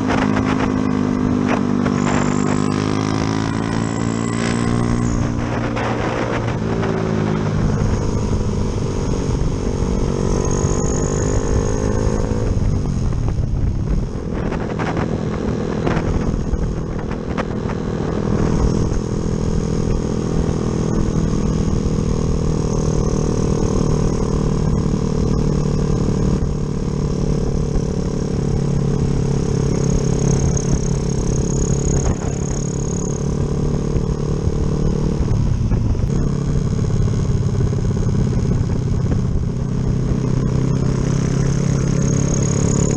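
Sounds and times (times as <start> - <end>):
motorcycle engine revving: 0.0 - 42.9.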